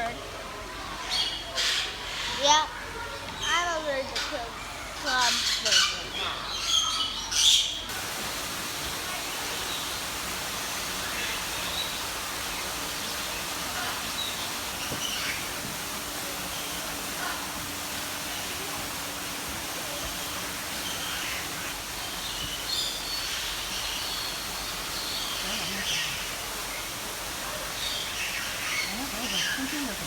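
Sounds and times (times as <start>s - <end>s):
tropical birds chirping: 0.8s - 30.0s
steady rushing hiss: 7.9s - 30.0s.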